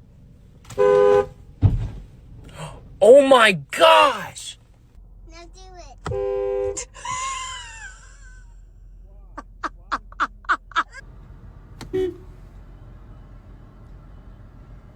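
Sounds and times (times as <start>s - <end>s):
car horn blast: 0.7s - 1.4s, 6.0s - 7.0s, 11.9s - 12.4s
person crying out: 3.1s - 4.5s.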